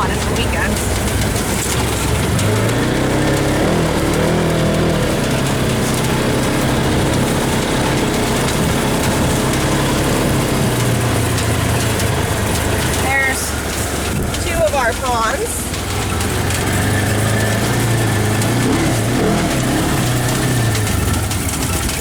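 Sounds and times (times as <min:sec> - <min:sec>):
vehicle engine running: 0:00.0 - 0:22.0.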